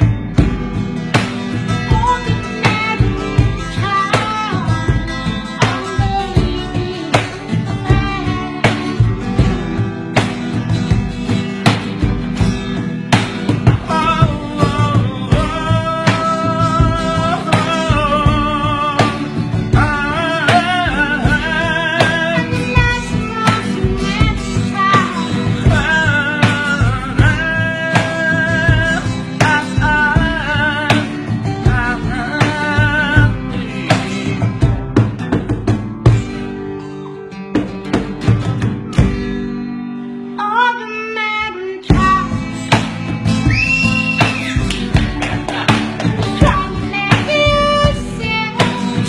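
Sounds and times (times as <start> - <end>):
rock ballad guitar and drums: 0.0 - 40.4, 41.9 - 49.0
person singing: 1.7 - 9.4, 13.7 - 34.6, 40.3 - 49.0.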